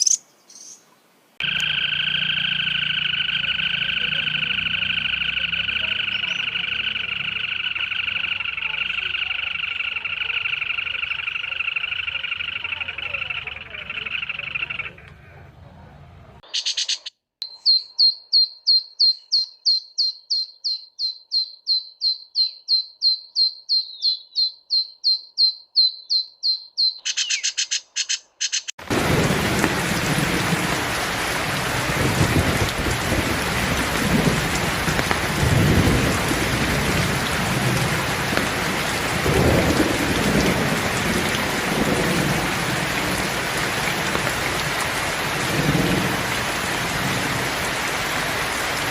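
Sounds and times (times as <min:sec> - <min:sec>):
songbird calling: 0:00.0 - 0:15.4, 0:16.4 - 0:28.8
heavy rain: 0:28.8 - 0:48.9
thunder rumbling: 0:28.8 - 0:48.9.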